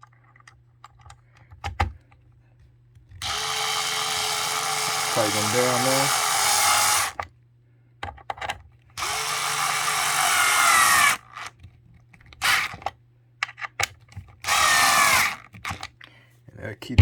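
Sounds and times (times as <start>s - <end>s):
cordless screwdriver running: 3.2s - 7.2s, 9.0s - 11.2s, 12.4s - 12.7s, 14.4s - 15.4s.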